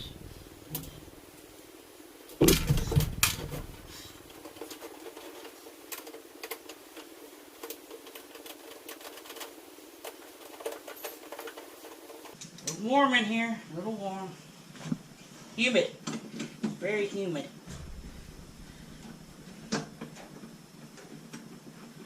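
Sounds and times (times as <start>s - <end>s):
louder knocks: 2.4s - 4.1s, 17.7s - 19.5s.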